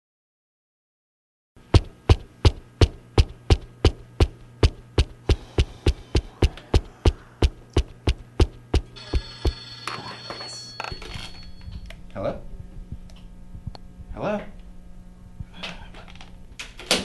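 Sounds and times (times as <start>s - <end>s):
low steady hum: 1.6s - 16.8s
high steady tones: 4.6s - 9.8s.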